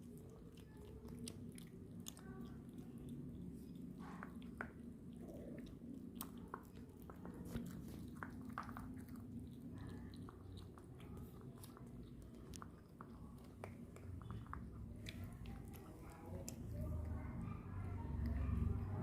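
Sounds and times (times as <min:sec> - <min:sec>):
cats chewing food: 0:00.0 - 0:19.0.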